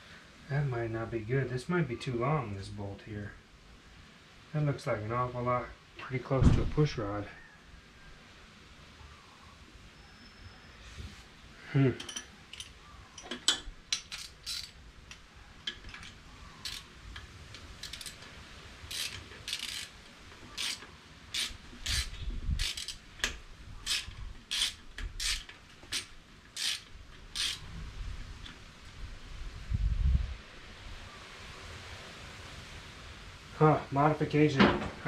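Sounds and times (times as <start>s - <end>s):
hand ratchet strokes: 12.0s - 14.8s, 15.9s - 16.9s, 17.8s - 18.3s, 18.9s - 27.7s.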